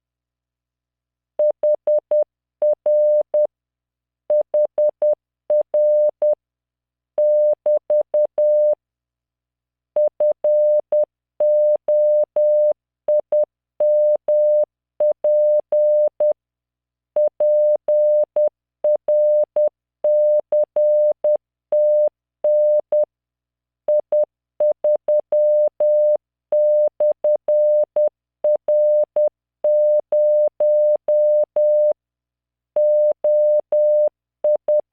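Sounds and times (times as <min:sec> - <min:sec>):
morse code beeps: 0:28.7 - 0:31.9, 0:32.8 - 0:34.9.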